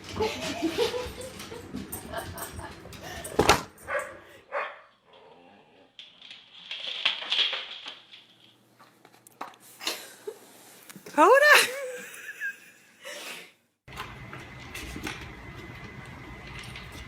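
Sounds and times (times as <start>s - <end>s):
dog barking: 3.8s - 4.9s.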